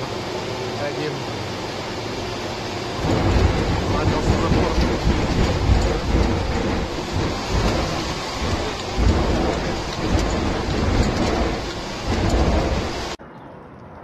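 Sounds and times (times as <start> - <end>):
sea water rushing against hull: 0.0 - 13.2
deep rumble: 3.0 - 13.2.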